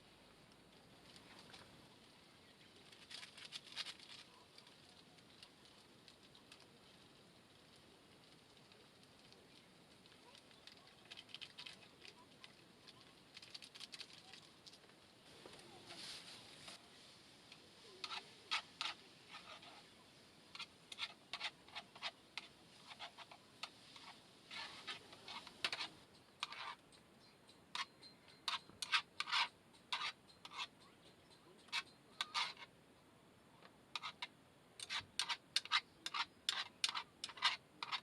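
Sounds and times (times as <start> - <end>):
short scratching and rustling: 15.3 - 17.0, 20.6 - 26.8.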